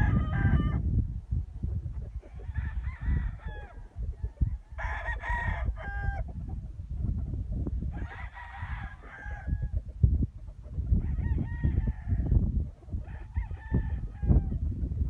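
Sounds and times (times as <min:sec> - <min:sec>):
low rumble with thumps: 0:08.6 - 0:15.0.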